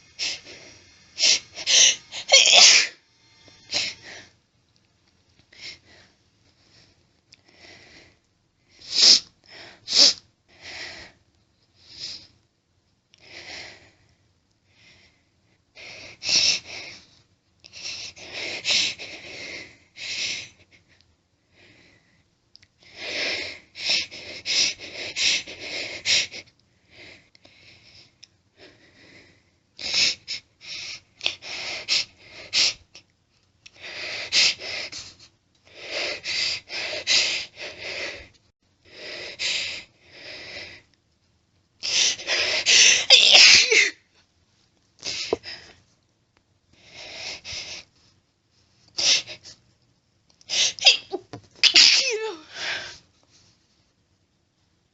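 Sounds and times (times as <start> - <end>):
woman holding back sneezes: 1.7 - 2.9, 42.8 - 44.0, 50.5 - 52.6.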